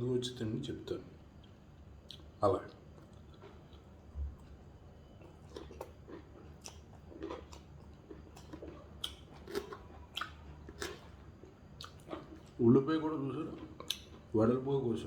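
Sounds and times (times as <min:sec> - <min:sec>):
person chewing food: 0:01.4 - 0:02.3, 0:02.9 - 0:12.6, 0:13.4 - 0:14.3.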